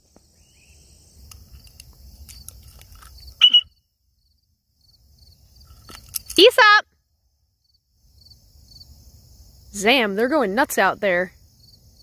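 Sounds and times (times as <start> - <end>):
crickets trilling: 0.0 - 12.0
cockatiel call: 3.4 - 3.8.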